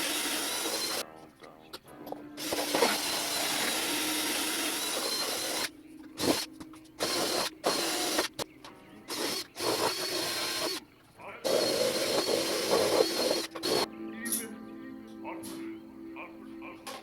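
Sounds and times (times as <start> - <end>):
power tool running: 0.0 - 1.0, 2.4 - 8.4, 9.1 - 10.8, 11.5 - 13.9.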